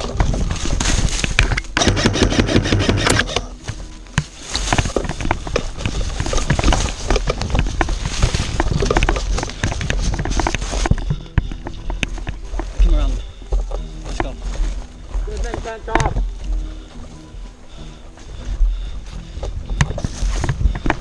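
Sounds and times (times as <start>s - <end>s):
wind rumble on microphone: 0.0s - 1.8s, 4.5s - 13.7s, 18.3s - 21.0s.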